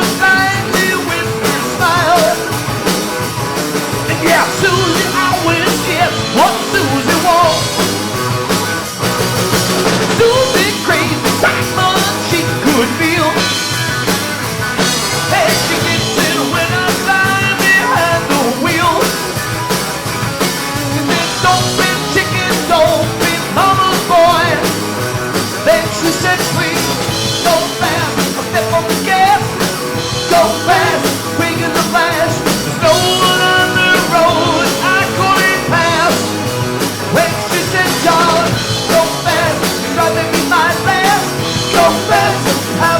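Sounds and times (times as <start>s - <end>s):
person singing: 0.0s - 2.6s, 4.0s - 7.8s, 10.1s - 13.7s, 15.2s - 19.3s, 20.8s - 24.8s, 25.6s - 42.9s
rock band playing: 0.0s - 42.9s.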